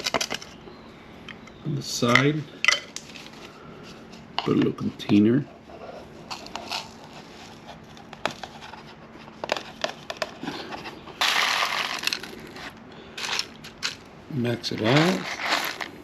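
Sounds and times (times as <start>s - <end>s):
coffee grounds pouring: 6.3s - 7.0s, 11.2s - 14.0s, 14.6s - 16.0s.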